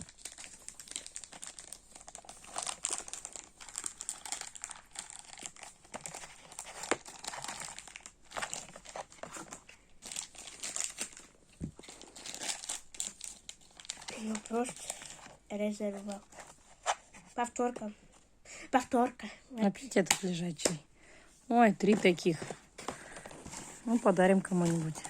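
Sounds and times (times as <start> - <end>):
plastic packaging crinkling: 0.0 - 16.6, 21.9 - 25.0.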